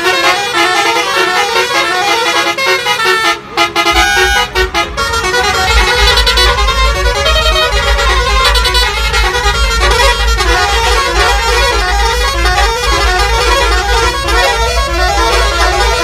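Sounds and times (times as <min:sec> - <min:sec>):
musical air horn tune: 0:00.0 - 0:16.0
steady low rumble: 0:03.5 - 0:16.0.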